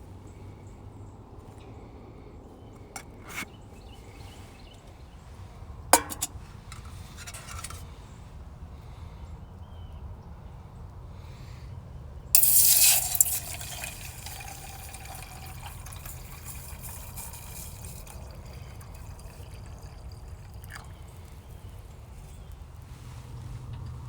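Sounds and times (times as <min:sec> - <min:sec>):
water pouring: 0:12.4 - 0:21.6
water trickling: 0:12.4 - 0:21.8.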